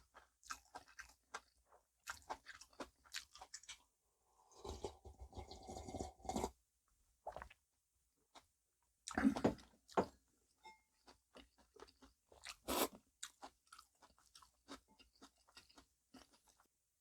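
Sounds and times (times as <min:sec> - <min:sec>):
close chewing crunches: 0:00.0 - 0:03.8, 0:11.1 - 0:16.7.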